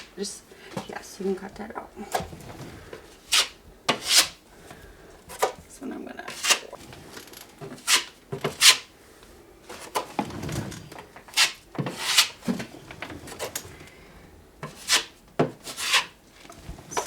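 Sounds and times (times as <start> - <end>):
putty knife scraping spackle: 3.2 - 4.4, 6.3 - 6.8, 7.7 - 8.9, 11.3 - 12.5, 14.6 - 16.2.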